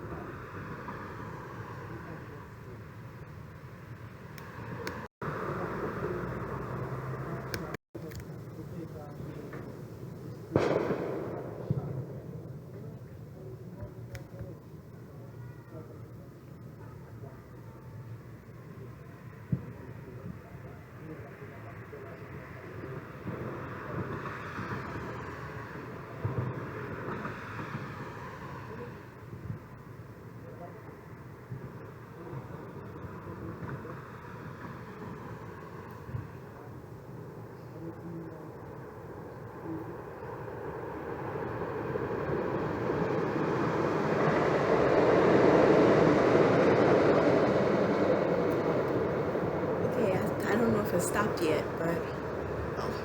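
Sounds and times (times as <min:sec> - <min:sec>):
passing vehicle rumble: 0:00.0 - 0:07.8, 0:20.9 - 0:29.8, 0:31.1 - 0:53.0.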